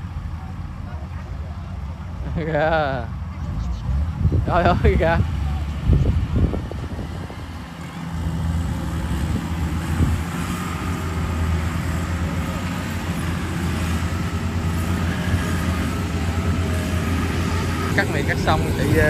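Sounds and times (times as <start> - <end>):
harvester engine droning: 0.0 - 19.0.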